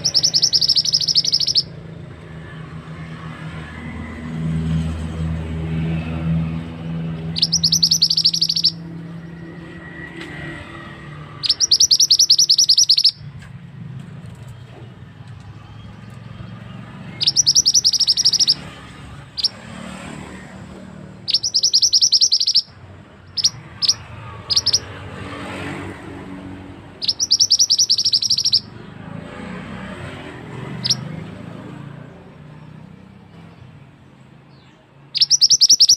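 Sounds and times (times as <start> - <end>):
bird chattering: 0.0 - 1.8, 7.1 - 9.2, 11.4 - 13.2, 17.1 - 19.6, 21.2 - 25.0, 27.0 - 28.7, 30.7 - 31.1, 35.1 - 35.9
bird sharp chips: 0.0 - 1.8, 7.2 - 8.8, 11.4 - 13.4, 17.1 - 20.2, 21.2 - 25.8, 27.0 - 28.7, 35.2 - 35.9.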